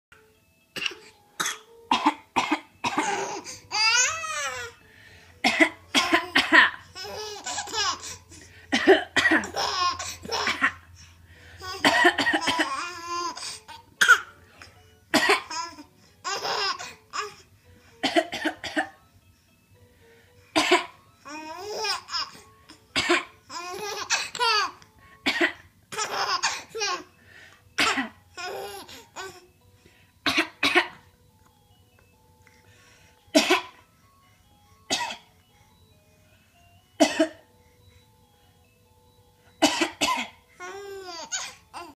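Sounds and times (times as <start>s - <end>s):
person coughing: 0.8s - 3.4s, 5.4s - 6.8s, 8.7s - 9.6s, 11.8s - 12.8s, 15.1s - 15.6s, 18.0s - 19.0s, 20.6s - 21.0s, 23.0s - 23.3s, 25.2s - 26.7s, 27.8s - 28.2s, 30.2s - 31.0s, 33.3s - 33.8s, 34.9s - 35.3s, 37.0s - 37.4s, 39.6s - 40.4s.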